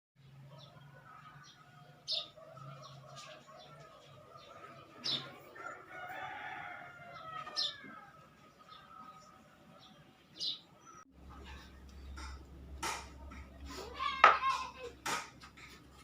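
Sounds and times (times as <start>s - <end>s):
rooster crowing: 5.6s - 8.3s.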